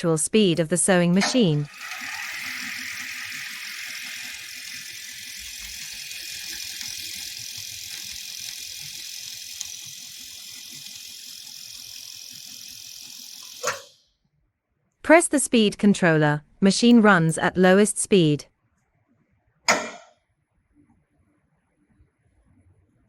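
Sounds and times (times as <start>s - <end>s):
sewing machine buzzing: 1.1s - 14.0s.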